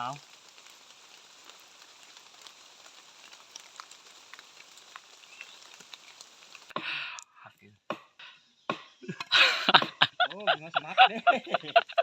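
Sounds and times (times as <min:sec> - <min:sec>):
drops ticking: 0:00.0 - 0:07.3
steady rain hiss: 0:00.0 - 0:07.8, 0:08.6 - 0:12.0.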